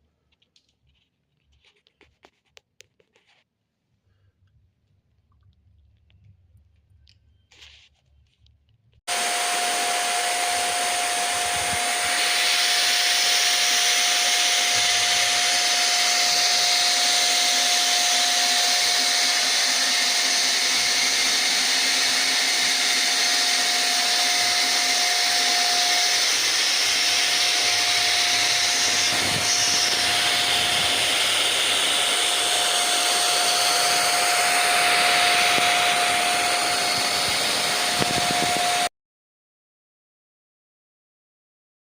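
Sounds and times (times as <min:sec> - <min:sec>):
electric router whirring: 0:09.1 - 0:38.9.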